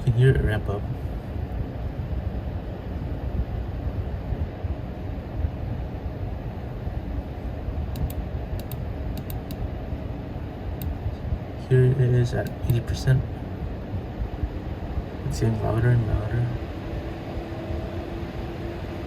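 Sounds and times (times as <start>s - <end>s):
graphics card fans rushing air: 0.0s - 19.0s
pc case fans: 0.0s - 19.0s.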